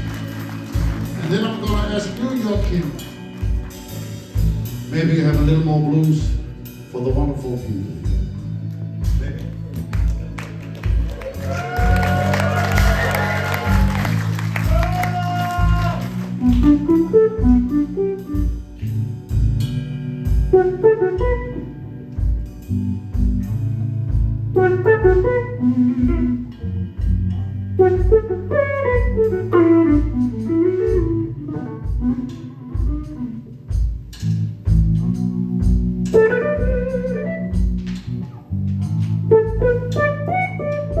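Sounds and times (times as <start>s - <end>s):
blues band playing: 0.0s - 41.0s
lead guitar bending notes: 13.7s - 41.0s.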